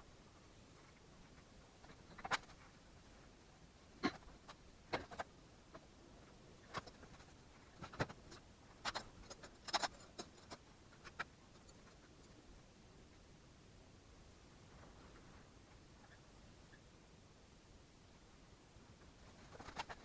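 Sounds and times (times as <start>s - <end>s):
tools and engine parts clinking: 8.3s - 11.9s.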